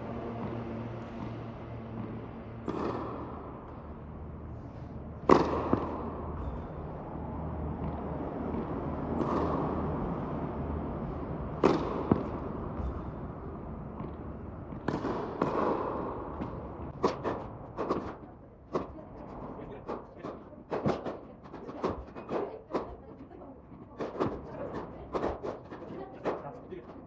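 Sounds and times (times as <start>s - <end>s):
racket hitting tennis ball: 2.0s - 4.0s, 5.2s - 7.0s, 7.7s - 23.0s, 23.8s - 27.0s.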